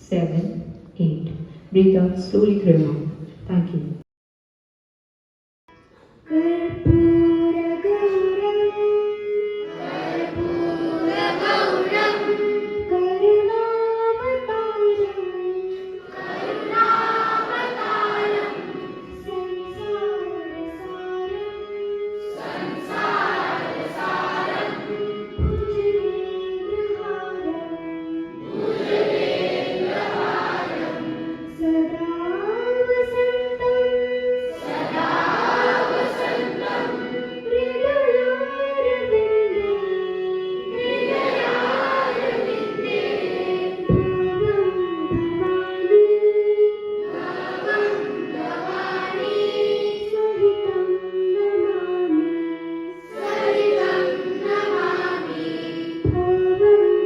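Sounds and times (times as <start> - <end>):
instrumental accompaniment: 5.7 - 57.0
group singing: 9.7 - 12.7, 16.0 - 19.3, 22.2 - 25.5, 28.4 - 31.6, 34.5 - 37.3, 40.7 - 43.9, 47.0 - 50.1, 53.0 - 56.2.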